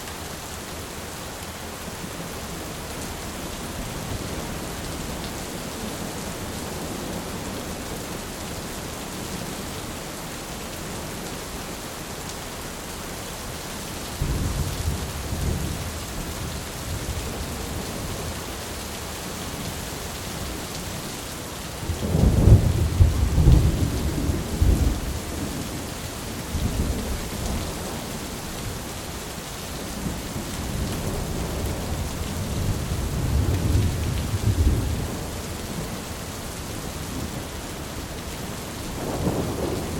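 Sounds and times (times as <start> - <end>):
heavy rain: 0.0 - 39.9
thunder rumbling and cracking: 21.8 - 25.6, 38.9 - 39.9.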